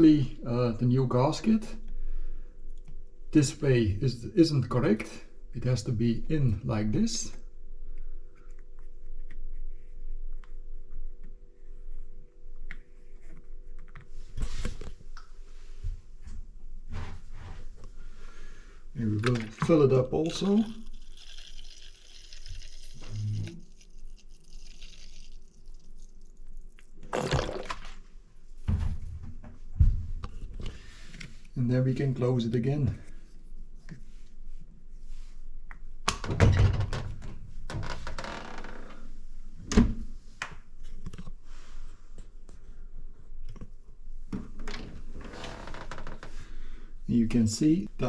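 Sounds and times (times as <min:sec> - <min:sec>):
liquid trickling from bottle: 0:19.4 - 0:27.9.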